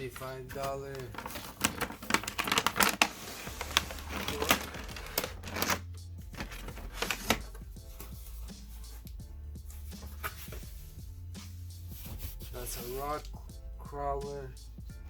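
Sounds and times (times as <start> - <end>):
packaging crinkling: 0.0 - 7.6
cardboard box being opened: 0.2 - 8.3.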